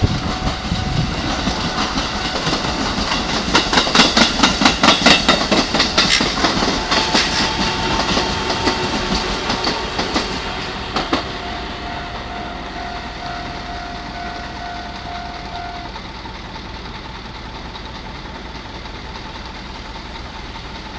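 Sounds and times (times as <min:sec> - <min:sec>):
train rumble: 0:00.0 - 0:20.9
train wheels clattering over rail joints: 0:00.0 - 0:20.9
thin held tone: 0:06.8 - 0:15.9.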